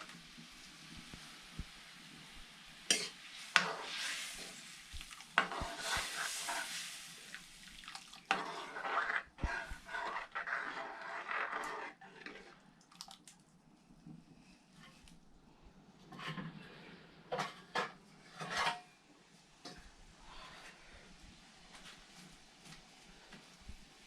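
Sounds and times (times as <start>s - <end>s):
utensil scraping cooking pot: 2.9s - 4.6s, 5.4s - 6.9s, 8.3s - 12.6s.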